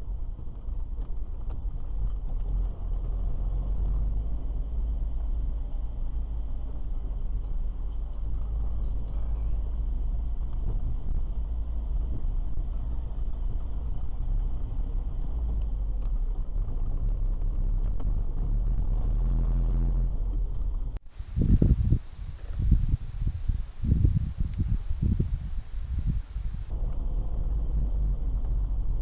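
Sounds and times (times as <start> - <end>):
low rumbling gusts: 21.0 - 26.7
car driving road noise: 21.1 - 26.7.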